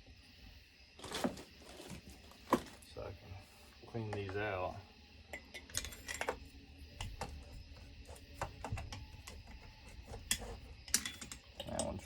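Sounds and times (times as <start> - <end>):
metal tool clicking and tapping: 10.2 - 12.0.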